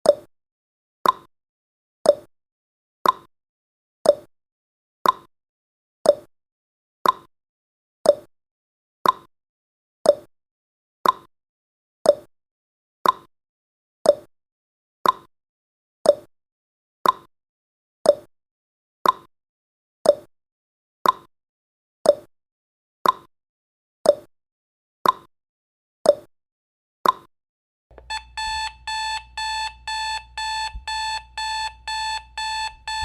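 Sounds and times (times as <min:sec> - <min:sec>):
alarm clock beeping: 0:27.9 - 0:33.0
clock ticking: 0:27.9 - 0:33.0.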